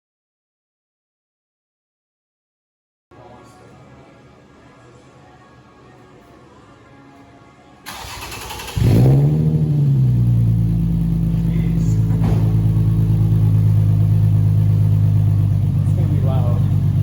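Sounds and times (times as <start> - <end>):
car engine revving and idling: 7.9 - 17.0.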